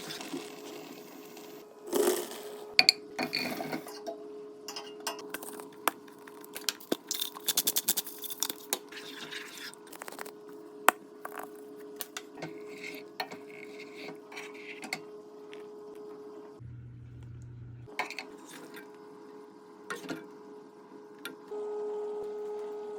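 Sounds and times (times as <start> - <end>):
utensils clinking against dishes: 2.8 - 5.7
steady hum: 16.5 - 17.9.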